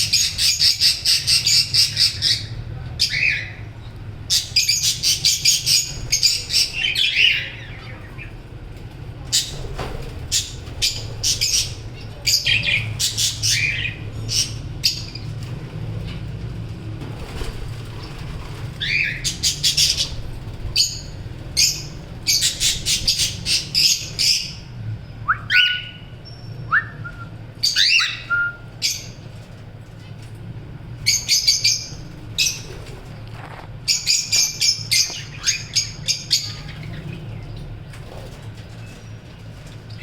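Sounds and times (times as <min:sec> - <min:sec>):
low steady hum: 0:00.0 - 0:40.0
parrots chirping shrilly: 0:20.8 - 0:24.6, 0:27.6 - 0:29.2
rising whistled calls: 0:25.2 - 0:29.2.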